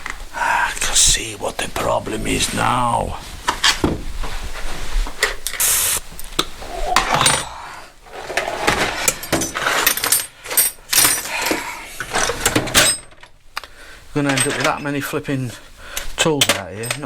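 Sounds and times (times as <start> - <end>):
metal hand tools clinking: 9.0 - 13.3, 14.2 - 15.2, 16.2 - 17.0.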